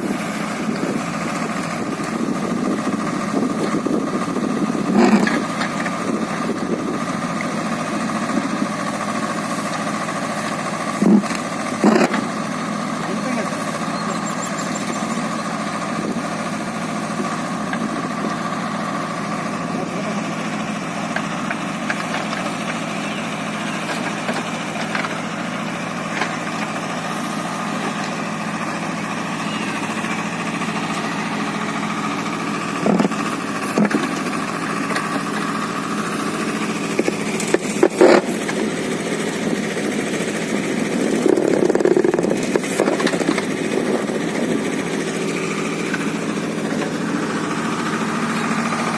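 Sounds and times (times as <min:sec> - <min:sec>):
tractor diesel engine running: 0:00.0 - 0:48.9.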